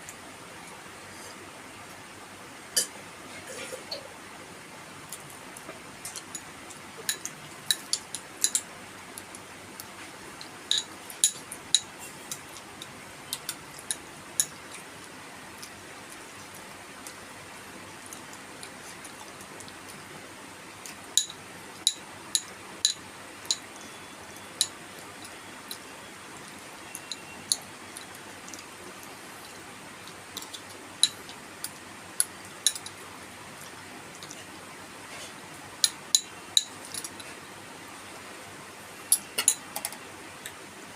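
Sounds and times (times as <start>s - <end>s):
eating clicks and clinks: 26.8s - 28.6s.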